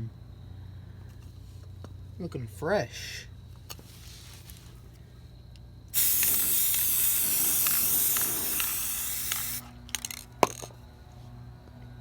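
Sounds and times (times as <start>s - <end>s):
spray paint can hissing: 5.9s - 10.2s.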